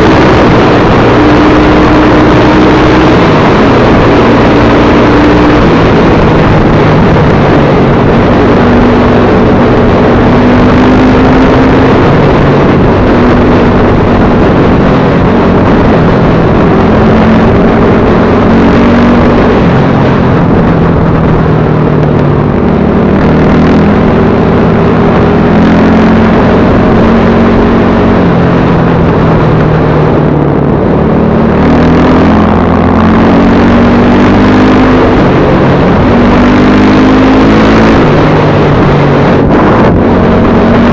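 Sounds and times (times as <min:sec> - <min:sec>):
dense rushing noise: 0:00.0 - 0:40.9
motorcycle engine revving: 0:00.0 - 0:40.9.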